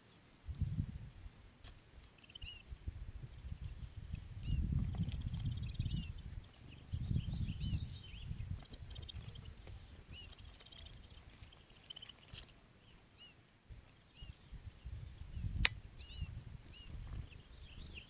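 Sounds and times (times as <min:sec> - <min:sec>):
small birds chirping: 0:00.0 - 0:00.4, 0:02.0 - 0:18.0
sharp click: 0:15.6 - 0:15.8.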